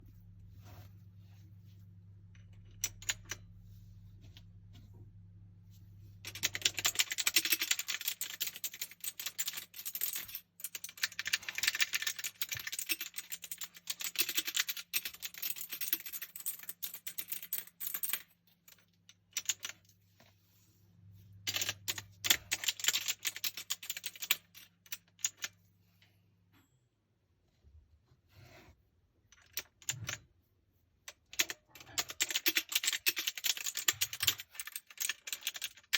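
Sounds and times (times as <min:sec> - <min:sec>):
mechanical keyboard typing: 0:06.3 - 0:17.8, 0:31.3 - 0:35.9.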